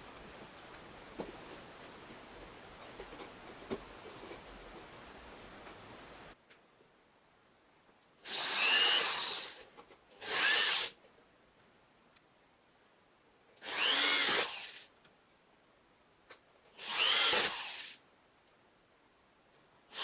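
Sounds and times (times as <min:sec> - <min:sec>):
electric drill spinning up: 0:08.3 - 0:09.6, 0:10.2 - 0:10.9, 0:13.6 - 0:14.8, 0:16.8 - 0:18.0.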